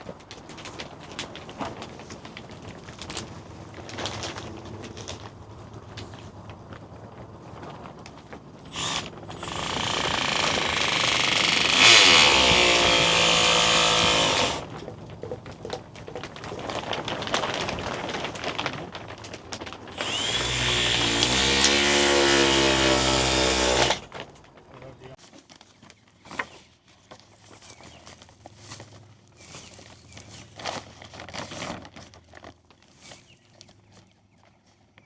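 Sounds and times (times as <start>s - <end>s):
power drill running: 8.7s - 14.9s, 19.9s - 24.3s.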